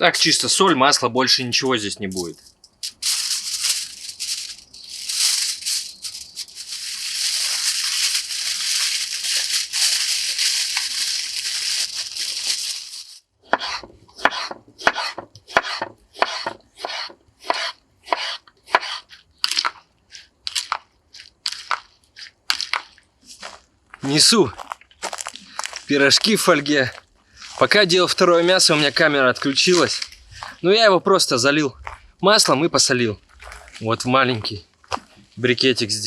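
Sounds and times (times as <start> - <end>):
steady rustling hiss: 0.0 - 14.1, 14.8 - 36.0
footsteps on dry forest ground: 19.5 - 36.0.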